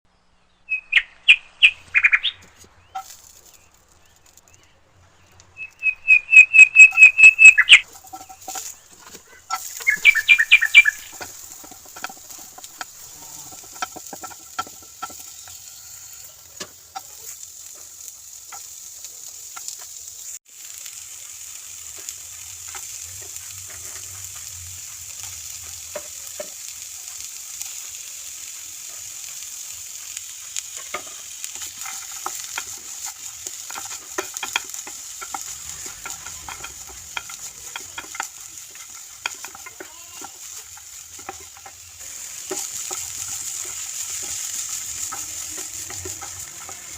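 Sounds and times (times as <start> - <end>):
food sizzling in a pan: 0.7 - 46.9
spoon scraping a pan: 2.4 - 4.3, 6.1 - 18.9, 21.9 - 46.9
short high chirps: 5.6 - 7.8.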